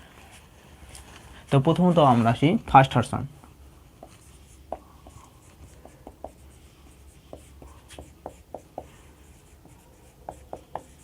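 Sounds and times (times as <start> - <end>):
scratchy writing strokes: 3.8 - 11.0.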